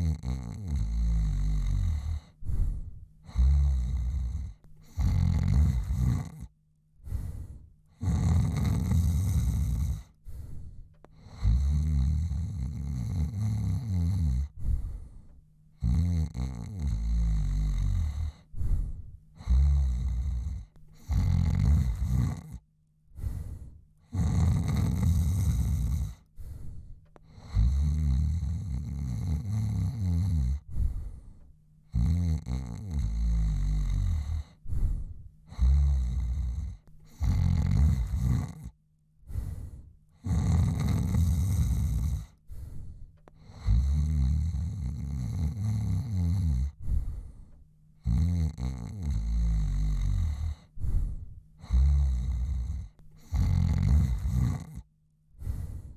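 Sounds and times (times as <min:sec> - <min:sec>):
man snoring loudly: 0:00.0 - 0:02.4, 0:03.2 - 0:06.5, 0:07.9 - 0:10.2, 0:11.2 - 0:14.6, 0:15.8 - 0:18.5, 0:19.4 - 0:22.6, 0:24.0 - 0:26.3, 0:27.2 - 0:30.7, 0:31.9 - 0:34.6, 0:35.5 - 0:38.8, 0:40.2 - 0:42.4, 0:43.4 - 0:46.8, 0:48.0 - 0:50.7, 0:51.6 - 0:54.9.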